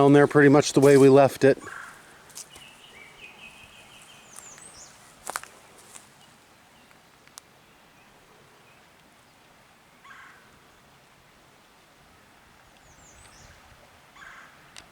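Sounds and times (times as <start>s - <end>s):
soft hiss: 0.0s - 14.9s
high falling bird chirps: 1.6s - 5.1s.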